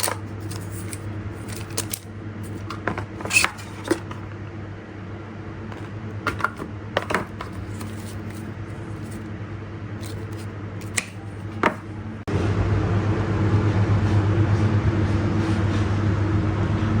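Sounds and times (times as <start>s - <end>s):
clicks and taps handling packaging: 0.0s - 4.3s, 5.7s - 9.2s, 10.0s - 11.8s
loud steady humming noise: 0.0s - 17.0s
steady low hum: 0.0s - 17.0s.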